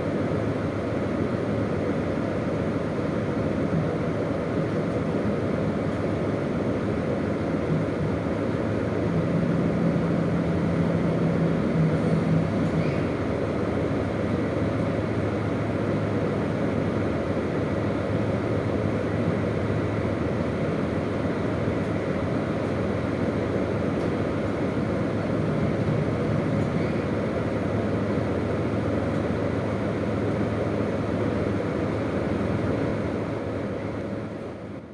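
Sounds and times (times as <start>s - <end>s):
train wheels rumbling on rail: 0.0s - 34.9s
low engine hum: 6.3s - 34.9s.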